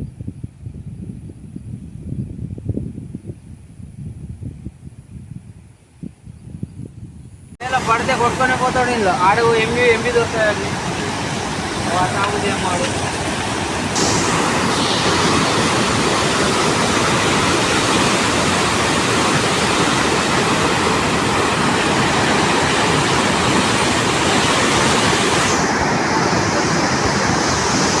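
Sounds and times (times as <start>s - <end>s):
floodwater rushing: 7.6s - 28.0s.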